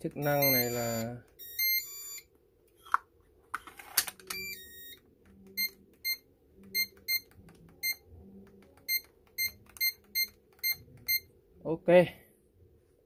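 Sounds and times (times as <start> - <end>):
keypad beeps: 0.2 - 2.3, 4.2 - 8.1, 8.8 - 11.3.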